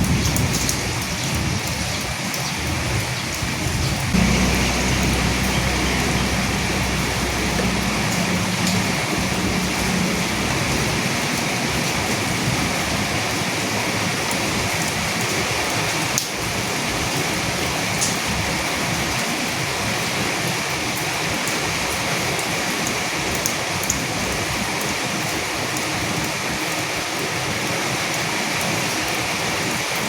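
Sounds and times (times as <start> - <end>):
rain falling: 0.0 - 30.0
raindrops ticking: 4.2 - 15.0.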